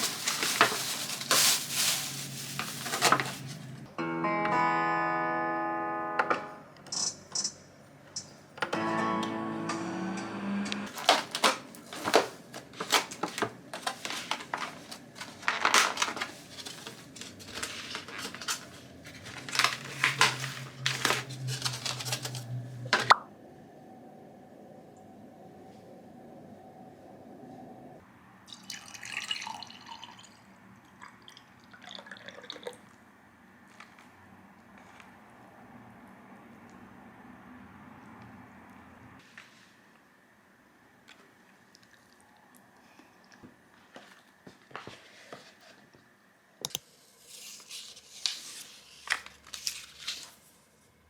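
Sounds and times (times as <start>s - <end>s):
wrapper tearing and crinkling: 0.0s - 3.6s, 10.9s - 22.6s.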